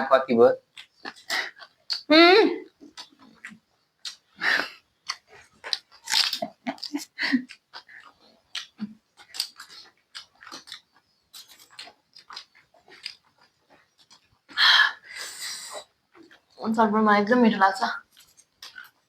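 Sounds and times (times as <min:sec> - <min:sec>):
crunchy snack chewing: 0:00.7 - 0:02.1, 0:02.7 - 0:14.6, 0:18.0 - 0:19.0
wet mouth clicks: 0:00.7 - 0:14.6.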